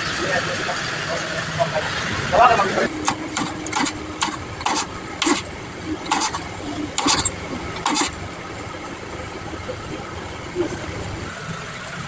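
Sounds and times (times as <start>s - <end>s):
low background hum: 0.0s - 12.0s
metal parts clicking and clattering: 3.0s - 8.2s.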